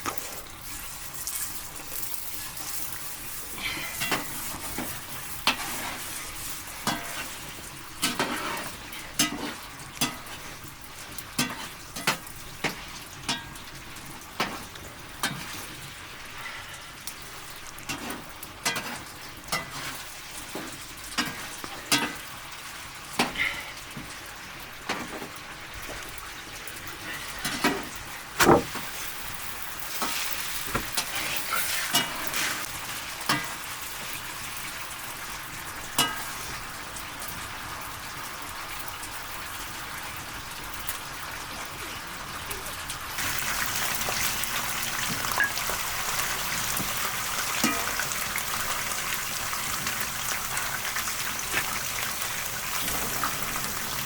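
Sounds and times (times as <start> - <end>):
utensil knocking and scraping a pot: 0.0 - 10.6, 17.8 - 22.3, 27.4 - 32.7, 43.2 - 54.0
food sizzling in a pot: 0.0 - 23.3, 23.9 - 42.3, 43.0 - 54.0.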